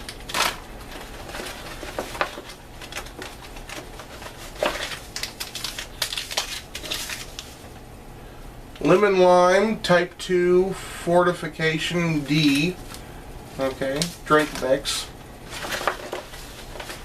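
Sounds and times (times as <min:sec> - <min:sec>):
plastic packets rustling: 0:00.0 - 0:07.7, 0:12.0 - 0:17.0.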